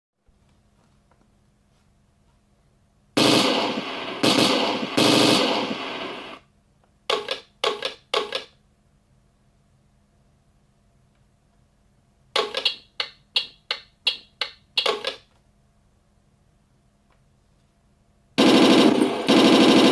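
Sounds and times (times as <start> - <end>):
faint steady hum: 0.2 - 7.1, 8.6 - 19.9
short sharp bursts: 3.2 - 6.4, 18.4 - 19.9
tank gun blasts from a speaker: 3.2 - 6.4.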